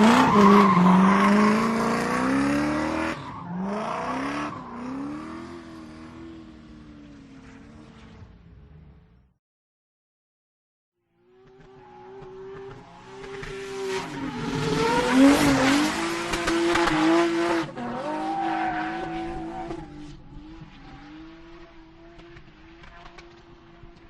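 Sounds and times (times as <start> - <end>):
car engine revving: 0.0 - 9.0, 11.4 - 24.0.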